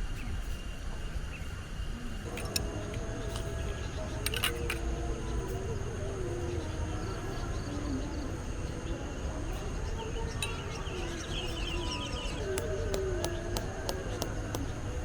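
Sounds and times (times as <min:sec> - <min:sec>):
faint distant voices: 0:00.1 - 0:15.0
insect drone: 0:00.1 - 0:15.0
bird chirping: 0:05.3 - 0:15.0.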